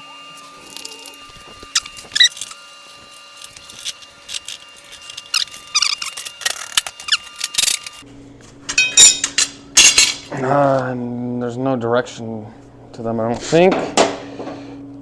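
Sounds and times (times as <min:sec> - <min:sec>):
metal parts clinking and knocking: 0:00.6 - 0:08.0, 0:08.8 - 0:10.2.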